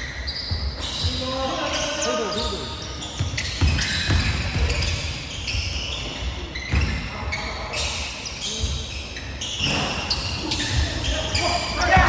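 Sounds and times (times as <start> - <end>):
basketball bouncing on gym floor: 3.2 - 5.0, 6.7 - 7.0, 10.6 - 12.0.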